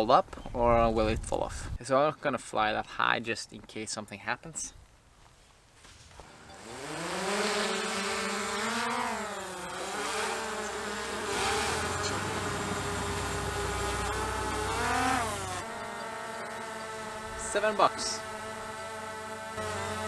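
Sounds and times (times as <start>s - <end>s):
drone propellers buzzing whine: 6.2s - 20.0s.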